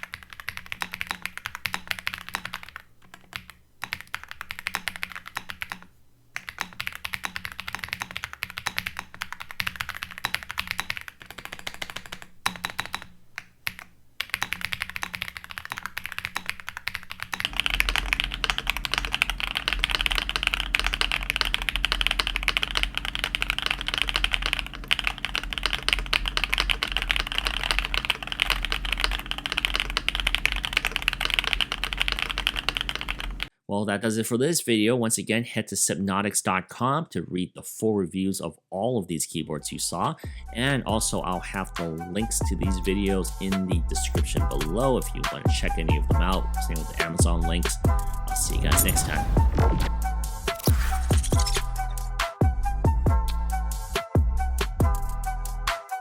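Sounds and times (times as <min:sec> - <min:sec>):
typing on mechanical keyboard: 0:00.0 - 0:33.5.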